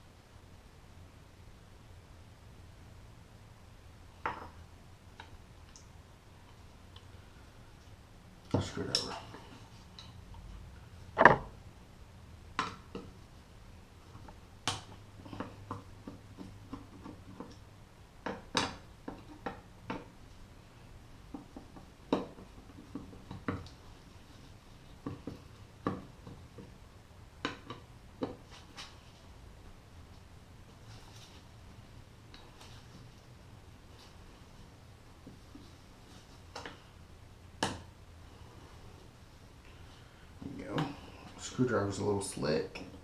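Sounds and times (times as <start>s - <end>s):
knock on workbench: 11.2s - 11.5s.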